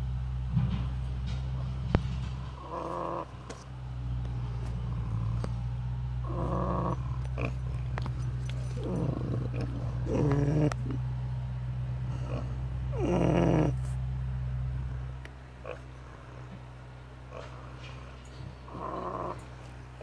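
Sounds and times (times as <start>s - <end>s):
steady hum: 0.0s - 20.0s
pigs snoring: 1.6s - 3.7s, 4.4s - 11.1s, 12.0s - 14.0s, 15.6s - 20.0s.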